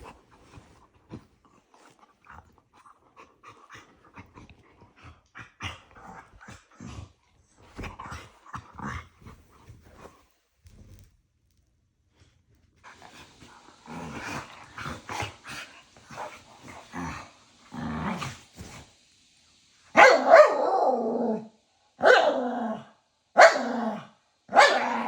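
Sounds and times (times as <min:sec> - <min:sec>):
small dogs growling: 0:12.9 - 0:18.8, 0:20.2 - 0:25.0
small dogs yapping barks: 0:20.0 - 0:21.0, 0:22.0 - 0:22.5, 0:23.4 - 0:23.9, 0:24.5 - 0:25.0.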